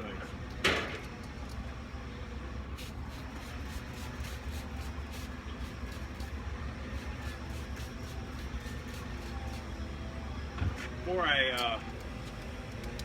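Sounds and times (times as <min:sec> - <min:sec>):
steady low hum: 0:00.0 - 0:13.0
spray bottle squirts: 0:02.8 - 0:06.4.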